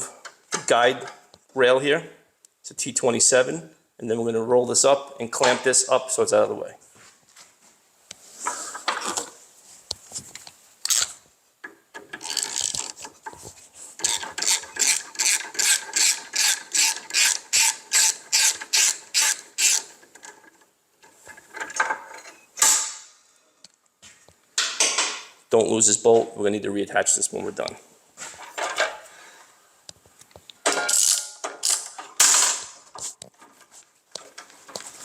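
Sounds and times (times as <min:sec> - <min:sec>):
screwdriver ratcheting strokes: 0:12.1 - 0:13.0, 0:14.0 - 0:20.0.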